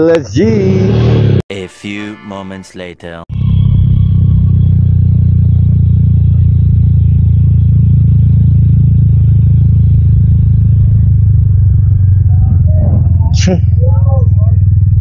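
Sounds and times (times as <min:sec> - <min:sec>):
road noise: 0:00.0 - 0:15.0
motorcycle engine rumble: 0:03.3 - 0:15.0.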